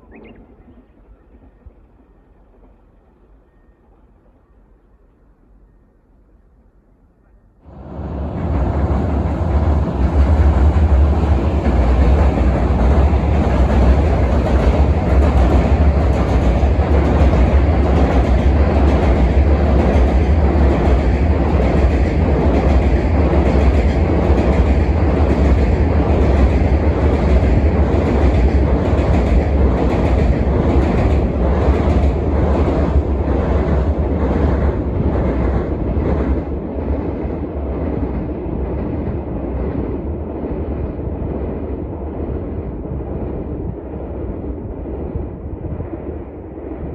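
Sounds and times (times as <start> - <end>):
freight train rumbling: 0.0 - 46.9
train wheels clacking over rail joints: 11.5 - 35.6.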